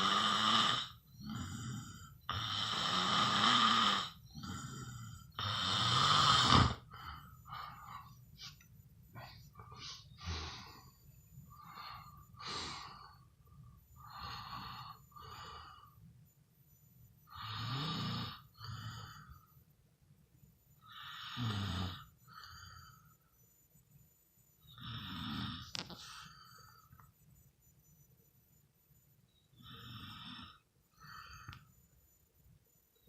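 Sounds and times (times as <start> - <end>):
person snoring: 0.0 - 8.1, 20.9 - 22.1.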